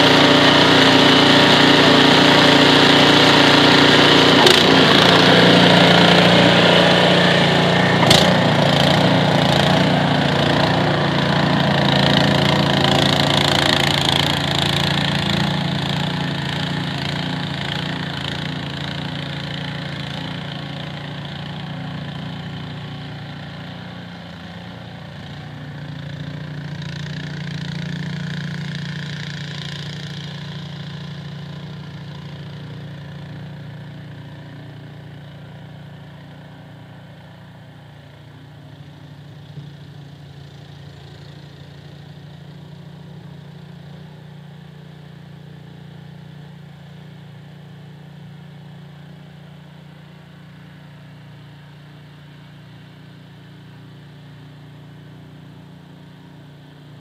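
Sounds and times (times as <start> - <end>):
small engine running: 0.0 - 57.0.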